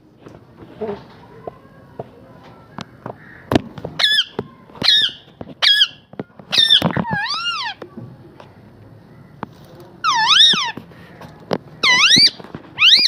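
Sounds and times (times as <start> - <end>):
parrot squeaky calls: 4.0 - 7.8, 10.0 - 10.8, 11.8 - 13.0.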